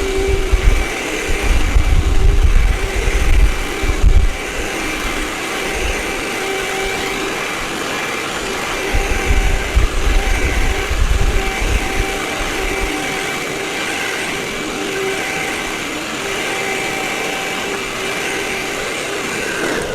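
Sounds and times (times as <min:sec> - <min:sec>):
low rumbling bumps: 0:00.0 - 0:04.4, 0:08.9 - 0:12.9
vacuum cleaner whining: 0:00.0 - 0:19.9.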